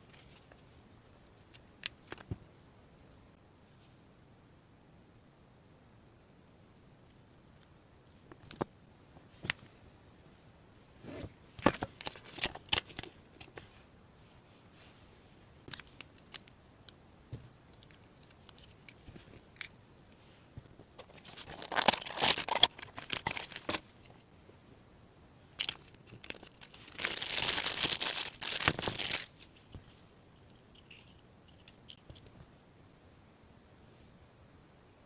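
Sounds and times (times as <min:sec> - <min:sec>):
wrapping material crinkling and tearing: 0:21.0 - 0:23.9, 0:25.6 - 0:29.6.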